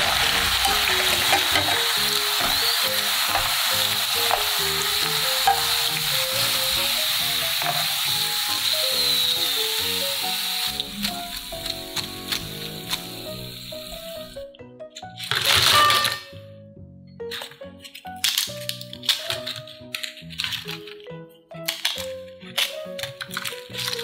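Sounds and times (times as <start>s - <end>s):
food deep-frying in oil: 0.0s - 14.3s.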